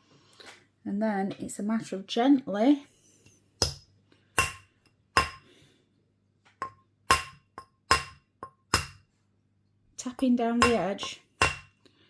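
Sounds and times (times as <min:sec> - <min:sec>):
hammer tapping metal washer: 0:06.6 - 0:09.0, 0:10.2 - 0:11.7.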